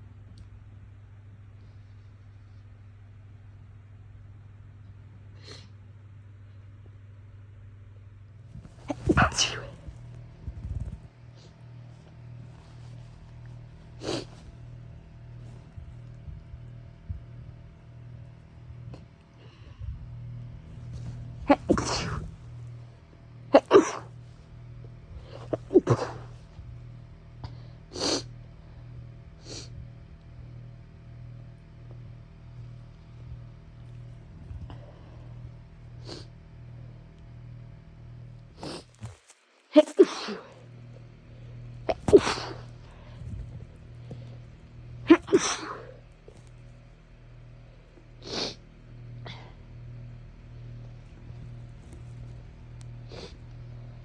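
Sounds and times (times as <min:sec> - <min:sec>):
person sneezing: 0:08.8 - 0:09.9, 0:21.5 - 0:22.4, 0:23.5 - 0:24.1, 0:25.3 - 0:26.3, 0:39.8 - 0:40.6, 0:41.9 - 0:43.0, 0:45.1 - 0:46.0
person sniffing: 0:08.9 - 0:09.9, 0:14.0 - 0:14.5, 0:21.5 - 0:22.4, 0:36.0 - 0:36.3, 0:38.6 - 0:39.2, 0:48.2 - 0:48.6, 0:53.0 - 0:53.4.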